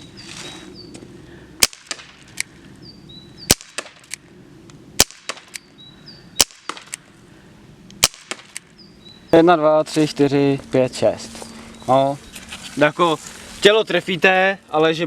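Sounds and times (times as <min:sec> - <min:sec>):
birds chirping: 0:00.0 - 0:15.0
airsoft revolver shots: 0:01.6 - 0:02.5, 0:03.5 - 0:04.2, 0:05.0 - 0:05.7, 0:06.4 - 0:07.0, 0:08.0 - 0:08.7.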